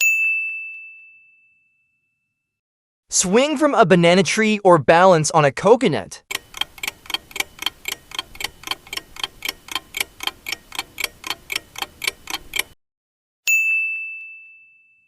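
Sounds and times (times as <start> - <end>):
clock ticking: 6.3 - 12.8.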